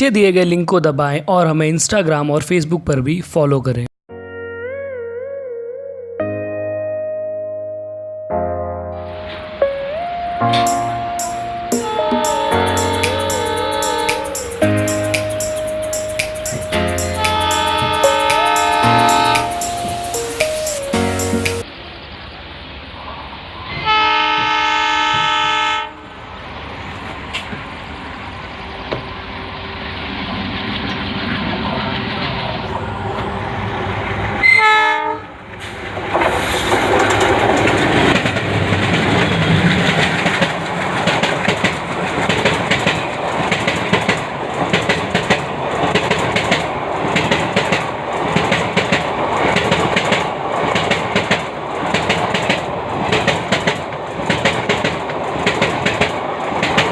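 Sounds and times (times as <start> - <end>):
train passing at speed: 9.1 - 56.9
diesel locomotive horn: 11.6 - 15.6, 16.7 - 20.3, 23.8 - 26.2, 34.4 - 35.4
wheels clacking over rail joints: 35.5 - 56.9.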